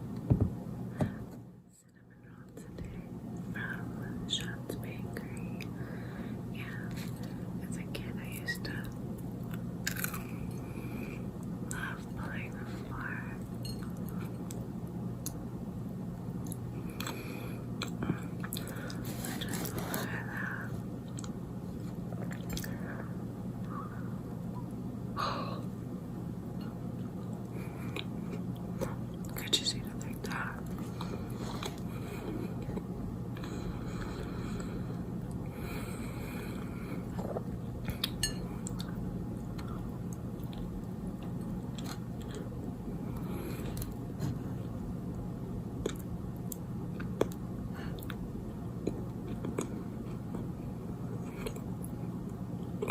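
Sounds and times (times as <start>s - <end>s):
steady low hum: 0.0s - 52.9s
chewing soft pastry: 30.0s - 52.9s
chewing with wet mouth clicks: 37.1s - 42.6s, 45.8s - 48.2s, 48.8s - 50.5s, 51.2s - 52.9s.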